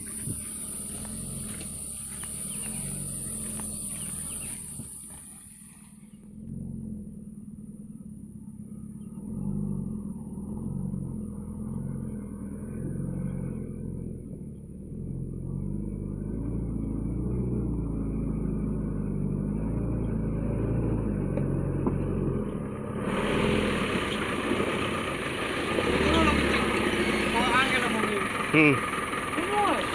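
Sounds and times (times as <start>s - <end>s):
truck engine running: 0.0s - 29.9s.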